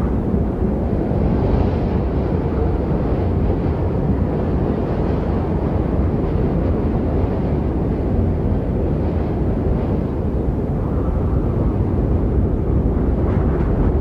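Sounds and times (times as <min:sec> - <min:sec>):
low rumbling snowstorm wind: 0:00.0 - 0:14.0.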